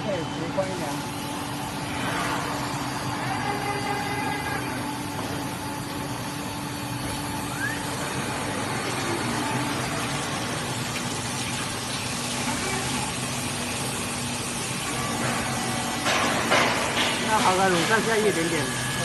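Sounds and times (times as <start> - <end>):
low machine hum: 0.0 - 19.0
water coolant rushing: 7.1 - 19.0.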